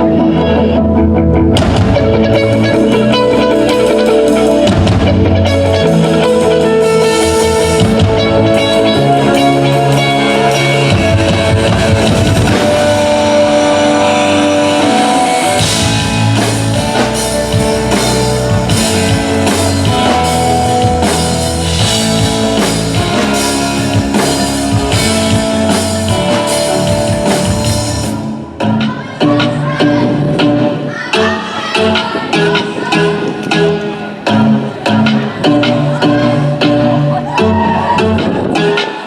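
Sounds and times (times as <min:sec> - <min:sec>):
live rock band: 0:00.0 - 0:39.0
drum hits: 0:01.5 - 0:02.7, 0:09.9 - 0:28.3.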